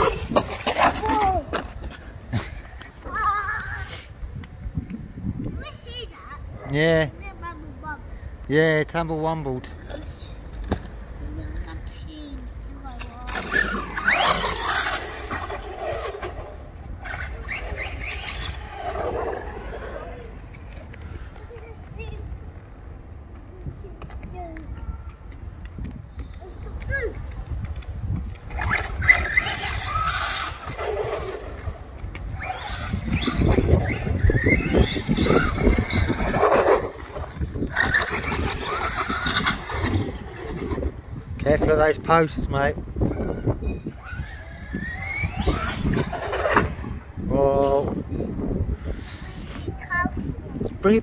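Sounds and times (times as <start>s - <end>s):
wind: 0.0s - 51.0s
tyres rumbling: 8.8s - 23.3s, 26.7s - 41.6s.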